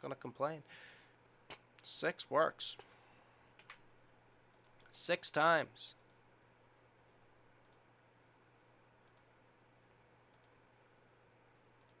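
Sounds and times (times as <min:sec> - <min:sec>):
computer mouse clicking: 0:03.6 - 0:03.8, 0:04.5 - 0:04.9, 0:06.0 - 0:06.2, 0:07.6 - 0:07.9, 0:09.0 - 0:09.3, 0:09.9 - 0:10.6, 0:11.8 - 0:12.0.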